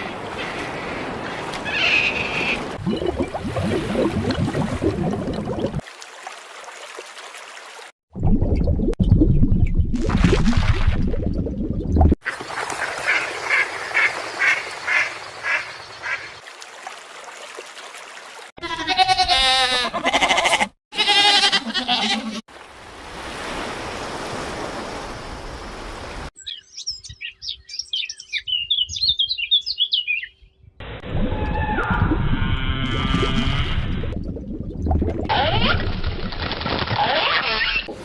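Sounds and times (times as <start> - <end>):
small birds chirping: 26.4 - 30.7.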